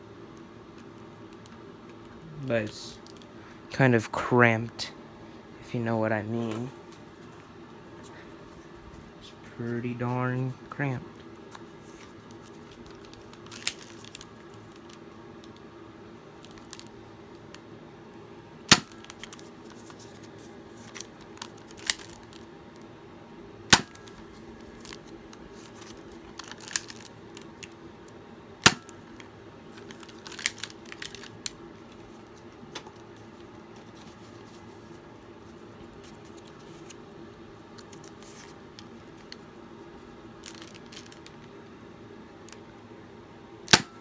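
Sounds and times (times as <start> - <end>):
toy dart blaster clicks and snaps: 43.7 - 44.0.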